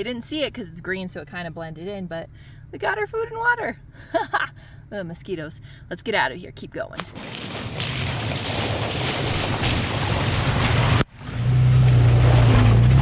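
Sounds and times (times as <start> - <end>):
truck engine running: 0.0 - 13.0
tyre and wind noise: 7.1 - 13.0.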